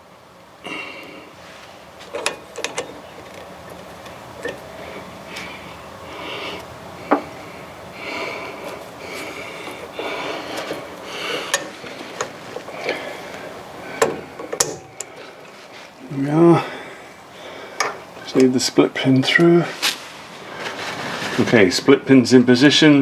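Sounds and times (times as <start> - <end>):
metal rubbing and scraping: 19.7 - 21.8.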